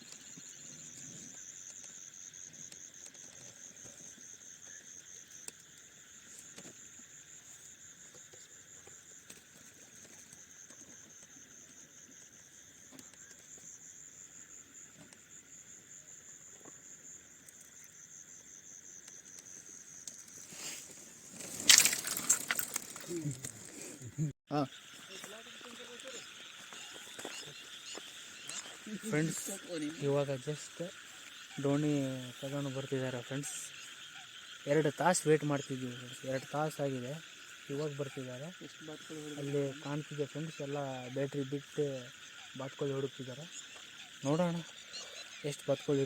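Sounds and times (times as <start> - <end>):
crickets trilling: 0.0 - 46.0
loud rustling and crackling: 20.4 - 24.0.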